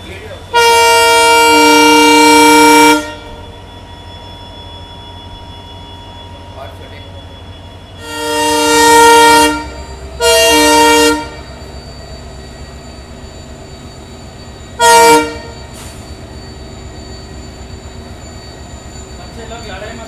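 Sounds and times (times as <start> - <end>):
moving train rumble: 0.0 - 20.0
locomotive air horn: 0.5 - 3.6, 8.0 - 11.7, 14.8 - 16.1.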